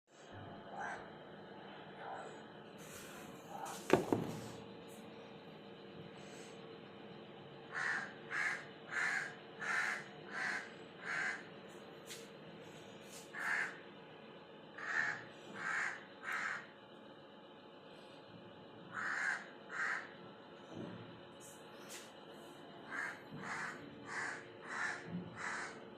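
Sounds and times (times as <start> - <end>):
crow cawing: 0.7 - 1.2, 7.7 - 11.5, 13.3 - 13.8, 14.8 - 16.8, 18.9 - 20.2, 22.8 - 25.9.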